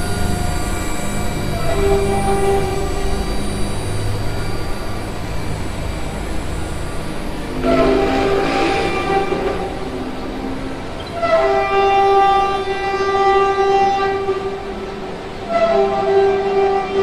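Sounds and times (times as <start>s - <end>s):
deep horn blasts: 7.6s - 17.0s.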